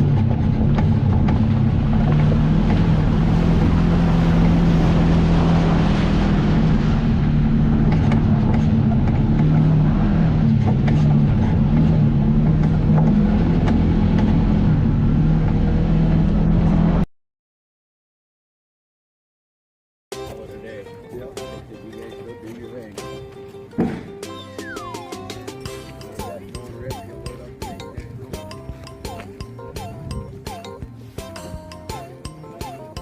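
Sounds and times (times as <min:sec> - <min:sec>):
vehicle engine running: 0:00.0 - 0:17.1.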